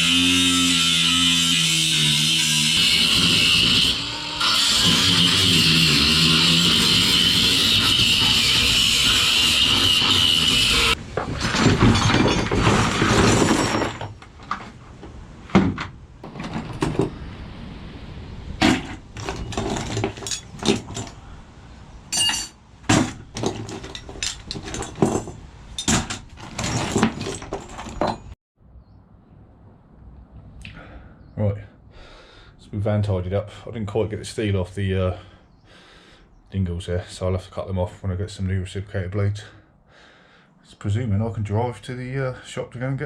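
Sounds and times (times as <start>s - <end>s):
scrap metal clanking: 2.8s - 17.3s, 18.6s - 21.2s, 22.1s - 28.4s.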